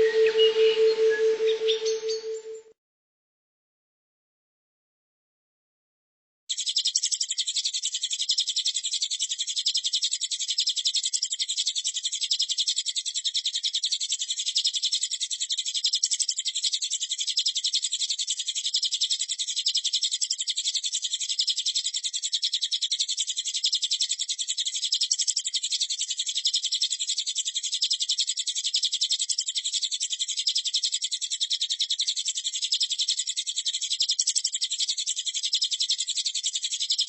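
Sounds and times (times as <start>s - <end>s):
high-pitched pulsing bird trill: 0.0s - 2.7s.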